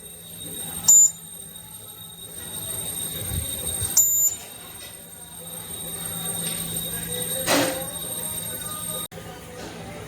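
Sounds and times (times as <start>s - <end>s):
alarm buzzer beeps: 0.0s - 9.1s
alarm click: 0.4s - 5.0s.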